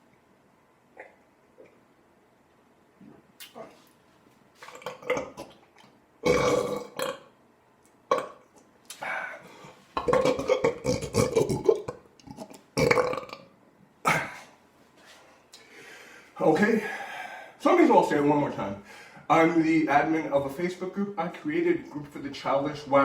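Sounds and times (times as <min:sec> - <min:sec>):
man belching: 0:04.7 - 0:05.6, 0:06.2 - 0:07.3, 0:08.1 - 0:08.4, 0:10.0 - 0:13.5.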